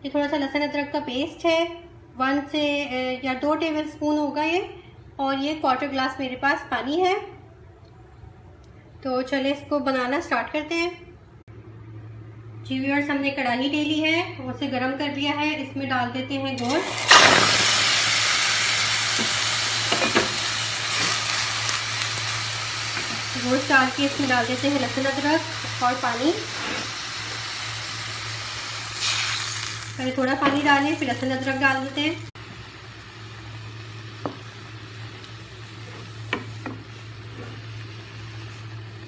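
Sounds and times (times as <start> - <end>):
meat sizzling in a pan: 16.7 - 31.9.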